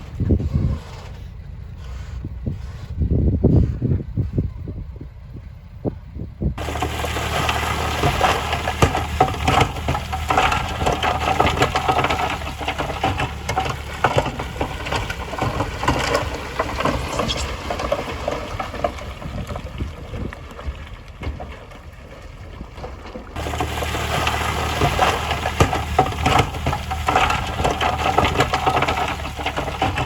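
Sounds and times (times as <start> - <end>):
diesel machinery engine running: 0.0 - 30.0
clanks and rattles: 6.6 - 30.0.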